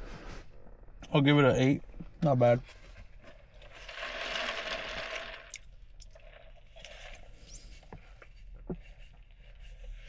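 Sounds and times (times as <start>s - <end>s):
rustling: 2.6s - 5.5s.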